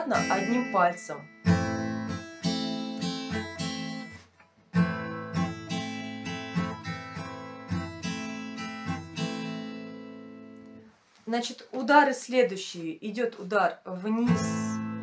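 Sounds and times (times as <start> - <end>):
acoustic guitar strumming: 0.0 - 10.8, 14.2 - 15.0.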